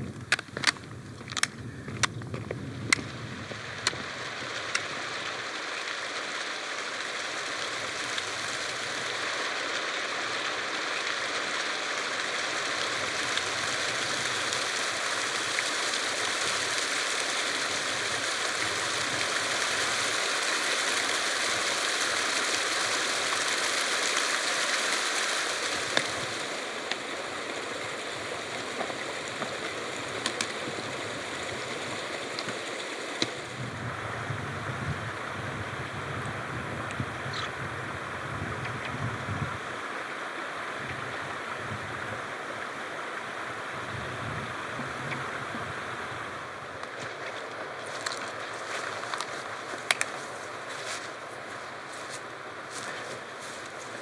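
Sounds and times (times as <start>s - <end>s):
faint clicks: 0.2s - 3.1s, 49.1s - 50.2s
stream water rushing: 3.2s - 54.0s.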